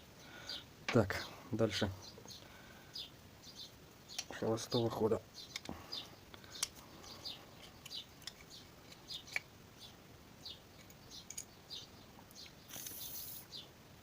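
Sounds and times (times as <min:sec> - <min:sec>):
bird chirping: 0:00.2 - 0:13.8
short hiss: 0:12.7 - 0:13.6.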